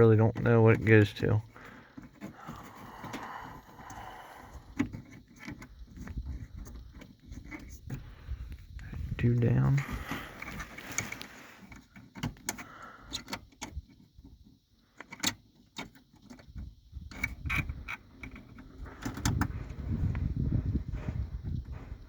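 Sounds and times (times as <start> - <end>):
low rumbling noise: 18.8 - 22.0.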